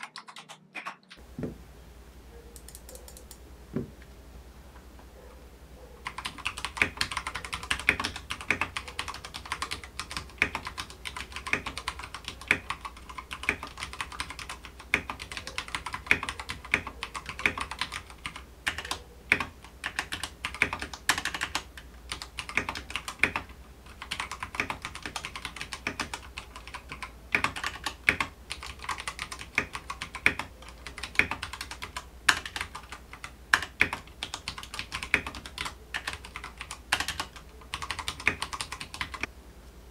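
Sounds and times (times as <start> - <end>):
mechanical keyboard typing: 0.0 - 1.2, 2.6 - 3.4, 6.0 - 39.3.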